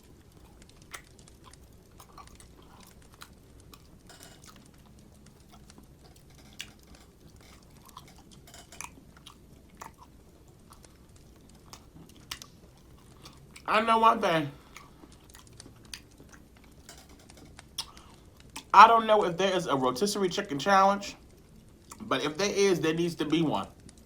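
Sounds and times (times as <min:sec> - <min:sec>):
person chewing food: 0:00.0 - 0:13.7, 0:14.5 - 0:18.7, 0:21.3 - 0:22.1.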